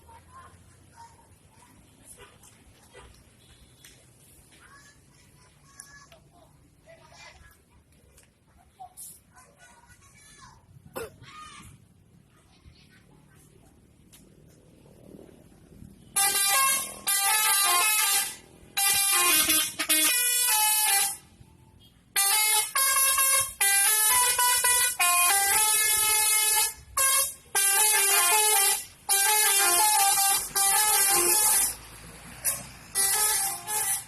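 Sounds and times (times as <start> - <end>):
bus air horn tune: 16.1 - 34.0.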